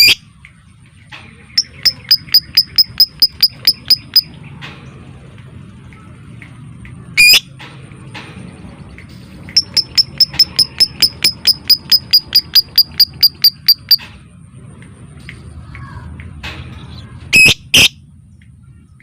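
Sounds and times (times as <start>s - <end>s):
lovebird sharp high calls: 0.0s - 0.2s, 1.6s - 4.3s, 7.2s - 7.5s, 17.4s - 18.0s.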